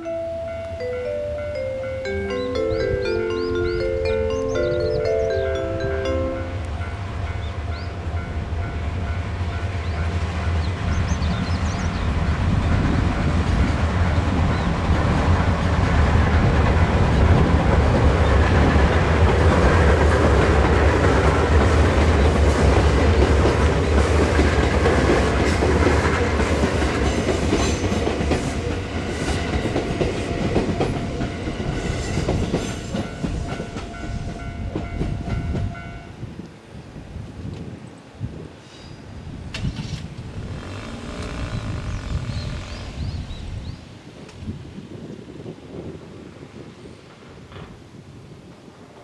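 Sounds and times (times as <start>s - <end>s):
level crossing warning bell: 0.0s - 10.6s, 27.0s - 36.3s
wheels clicking over rail joints: 0.0s - 35.9s, 39.4s - 44.6s
electric train rumble: 0.0s - 49.0s.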